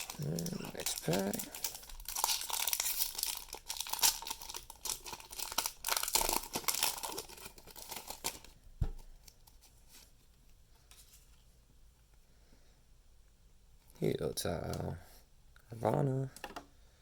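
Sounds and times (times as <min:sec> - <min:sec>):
foil wrapper tearing and crinkling: 0:00.0 - 0:08.5.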